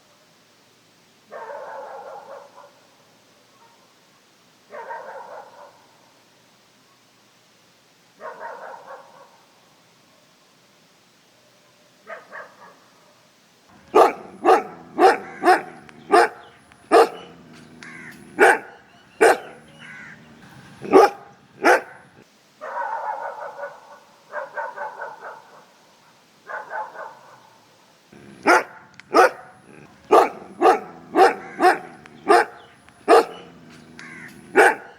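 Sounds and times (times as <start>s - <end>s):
dog barking: 1.3s - 6.1s, 8.2s - 10.5s, 11.4s - 34.9s
dog drawn-out calls: 12.1s - 25.8s, 26.5s - 34.9s.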